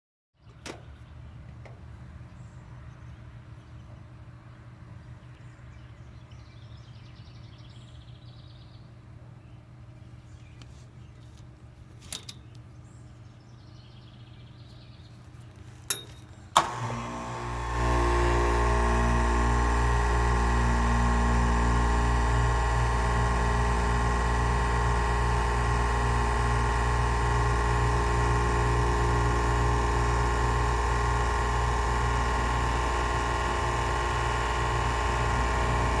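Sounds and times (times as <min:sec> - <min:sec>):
air conditioner click: 0:00.5 - 0:01.9, 0:16.6 - 0:17.4.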